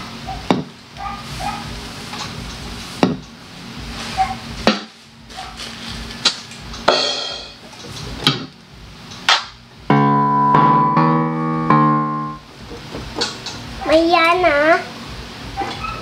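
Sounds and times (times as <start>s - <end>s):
electronic keyboard notes: 9.9s - 12.5s.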